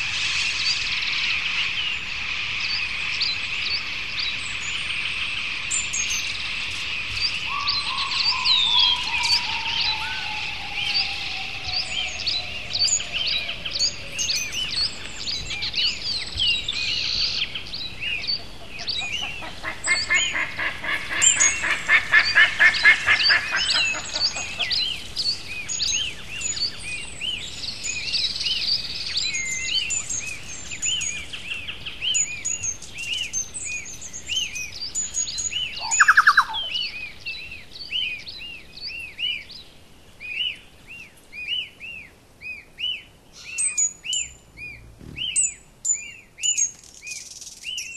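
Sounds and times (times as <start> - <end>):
wild birds singing and chirping: 0.0 - 47.9
fast rattling bird call: 18.9 - 25.0, 35.8 - 36.8.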